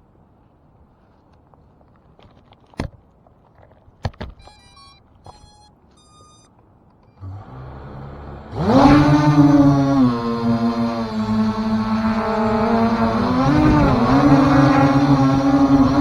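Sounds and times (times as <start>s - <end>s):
short electronic beeps: 4.4s - 7.2s.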